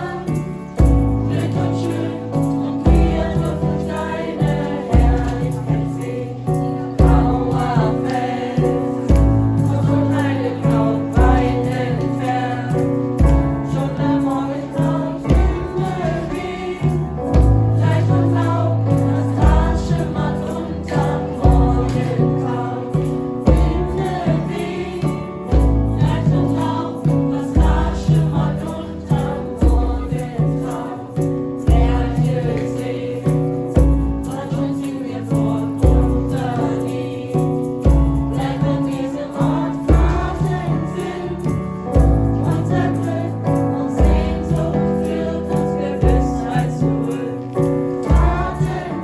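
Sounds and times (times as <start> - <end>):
choir singing: 0.0 - 49.0
deep beat: 7.0 - 12.4, 15.2 - 32.8.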